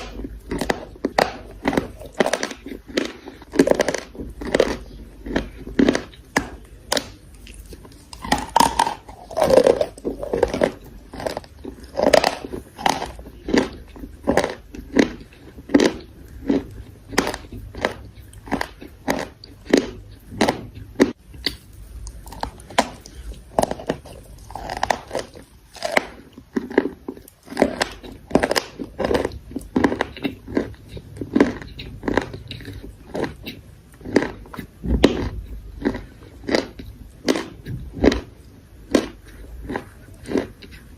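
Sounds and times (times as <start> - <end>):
chewing chalk crunches: 0.0 - 40.9.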